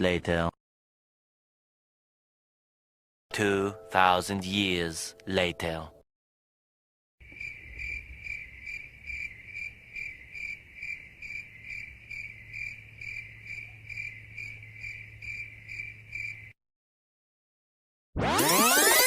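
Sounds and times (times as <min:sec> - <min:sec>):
cricket chirping: 0:07.2 - 0:16.6.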